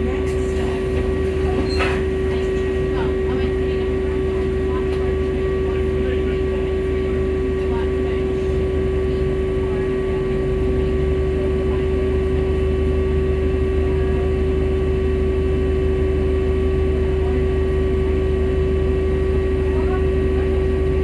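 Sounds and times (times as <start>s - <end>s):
bus steady hum: 0.0s - 21.0s
low engine rumble: 0.0s - 21.0s.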